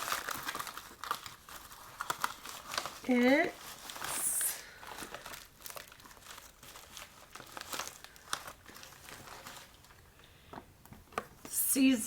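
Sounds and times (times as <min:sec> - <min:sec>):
plastic packaging crinkling: 0:00.0 - 0:10.2.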